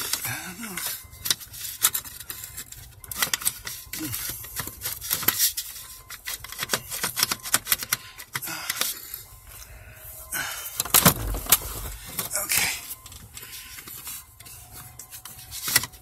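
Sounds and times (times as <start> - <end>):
small metal parts clicking: 0.0 - 9.1.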